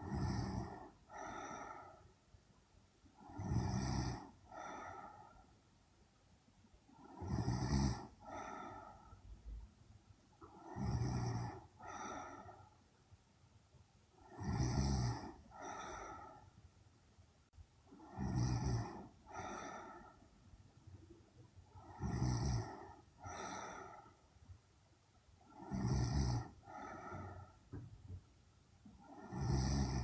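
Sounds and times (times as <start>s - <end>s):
woman snoring: 0.0s - 2.0s, 3.2s - 5.4s, 6.9s - 9.2s, 10.4s - 12.7s, 14.2s - 16.5s, 17.9s - 20.2s, 21.7s - 24.2s, 25.4s - 27.8s, 29.0s - 30.0s.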